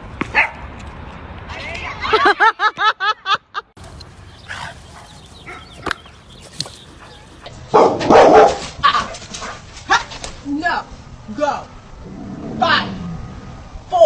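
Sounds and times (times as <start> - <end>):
dog yipping: 3.8 - 7.5.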